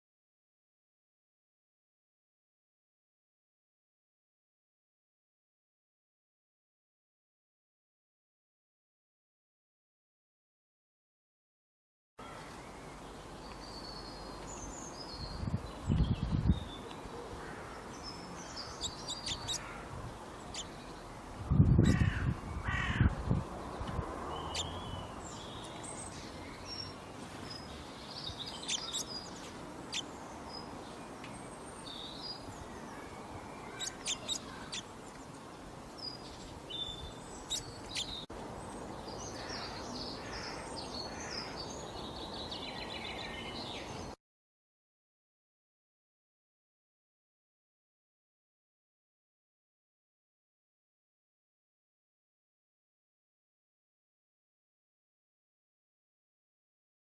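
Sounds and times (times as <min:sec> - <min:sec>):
birds chirping: 0:12.2 - 0:44.2
cawing calls: 0:18.5 - 0:20.6, 0:21.9 - 0:23.1, 0:33.7 - 0:34.8, 0:39.4 - 0:41.6.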